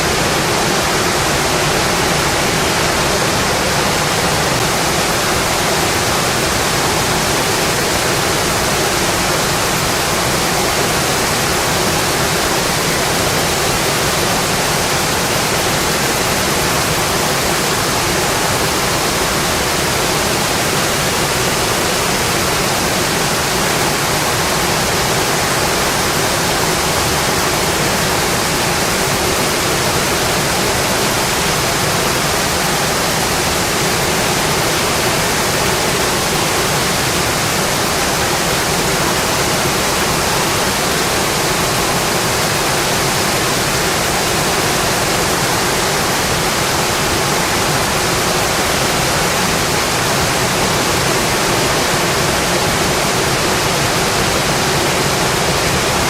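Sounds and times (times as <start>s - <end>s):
steady rainfall: 0.0s - 56.0s.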